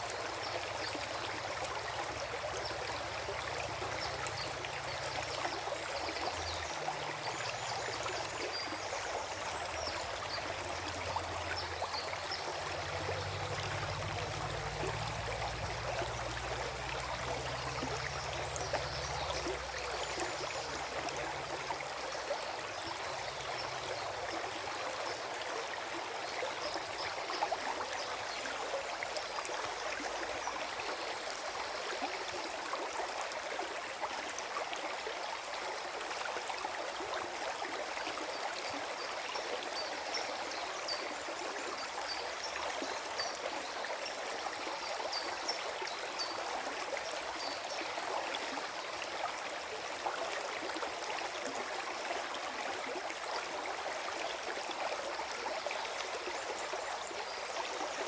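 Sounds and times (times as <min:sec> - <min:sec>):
stream flowing over stones: 0:00.0 - 0:58.0.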